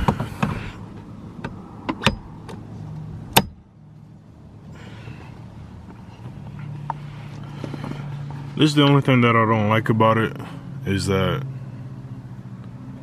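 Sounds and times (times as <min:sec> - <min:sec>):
car parts clicking and knocking: 0:00.0 - 0:03.7, 0:05.8 - 0:08.4.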